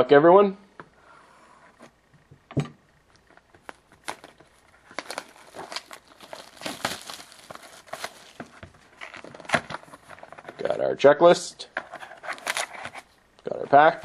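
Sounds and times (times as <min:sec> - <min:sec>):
plastic wrapping crinkling and tearing: 0:03.6 - 0:10.8, 0:12.2 - 0:13.0.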